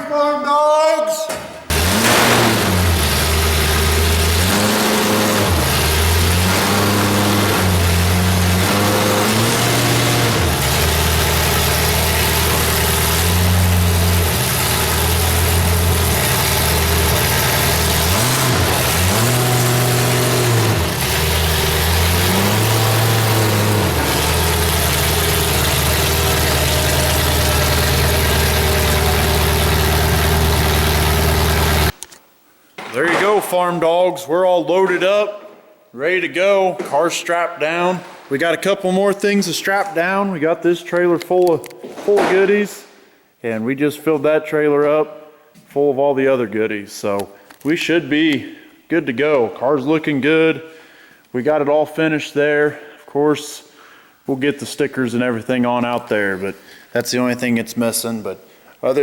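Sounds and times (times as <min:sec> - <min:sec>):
car engine revving and idling: 0:01.7 - 0:32.0.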